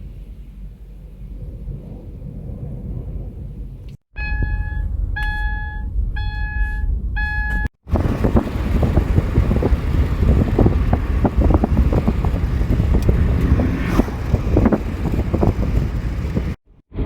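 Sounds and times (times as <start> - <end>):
wind gusting against vehicle: 0.0 - 4.0, 7.8 - 17.0
low rumble: 0.0 - 17.0
rain striking vehicle: 7.9 - 16.6.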